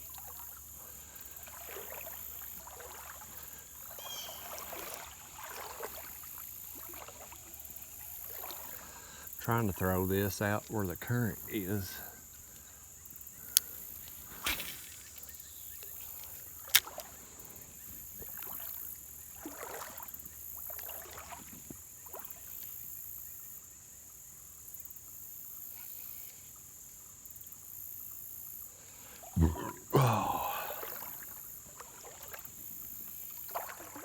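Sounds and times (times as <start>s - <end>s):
water swishing around wading legs: 0.0s - 9.6s, 11.4s - 23.4s, 28.8s - 34.0s
crickets droning: 0.0s - 34.0s.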